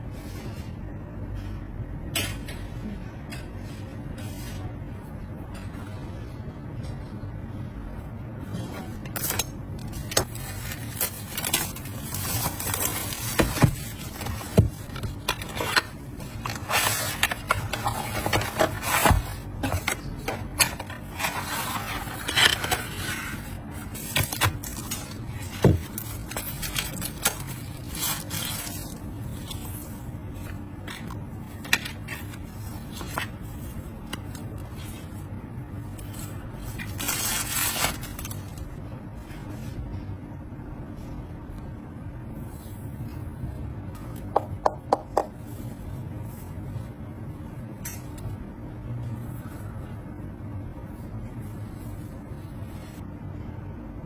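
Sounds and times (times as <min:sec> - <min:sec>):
steady low hum: 0:00.0 - 0:54.0
plastic and cardboard scraping: 0:09.9 - 0:35.2.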